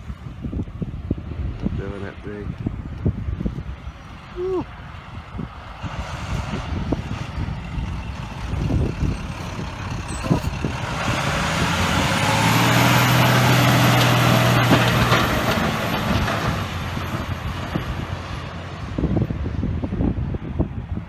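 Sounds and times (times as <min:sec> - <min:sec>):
truck engine hum: 0:00.0 - 0:21.0
plow pushing snow: 0:05.8 - 0:19.0.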